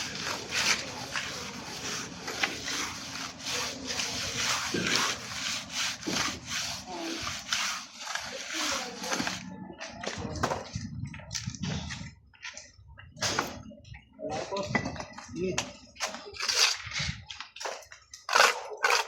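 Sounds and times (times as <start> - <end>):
hand tool scraping a surface: 0.0 - 9.4, 16.0 - 19.0.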